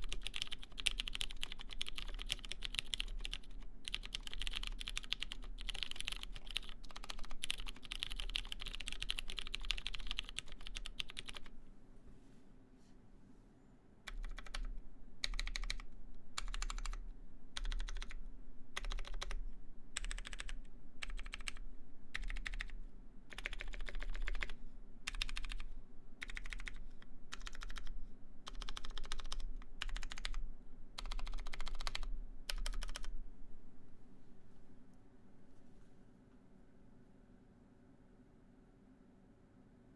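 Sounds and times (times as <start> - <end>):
typing on a mechanical keyboard: 0.0 - 11.5, 14.1 - 17.0, 17.6 - 18.2, 18.8 - 19.4, 20.0 - 21.6, 22.2 - 27.9, 28.5 - 30.4, 31.0 - 33.1.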